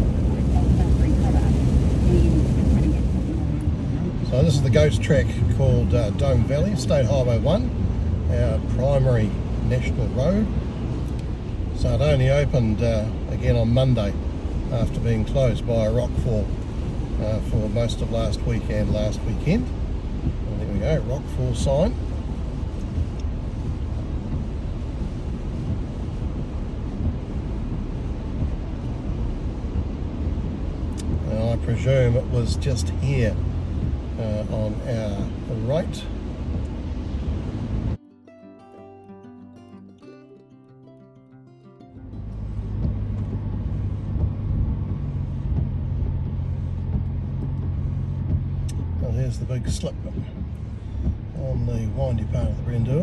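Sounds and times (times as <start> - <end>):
vehicle driving on highway: 0.0 - 38.0, 42.0 - 53.0
music: 38.0 - 48.8.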